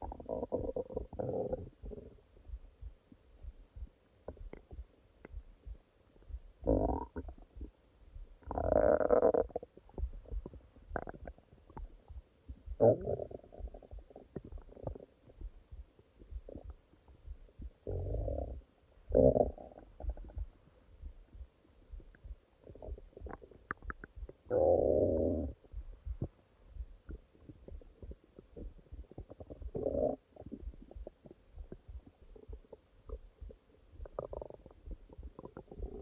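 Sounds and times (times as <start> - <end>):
stomach growling: 0.0 - 2.2, 6.6 - 7.7, 8.4 - 15.6, 16.2 - 16.8, 17.5 - 20.7, 22.0 - 26.4, 27.0 - 36.0.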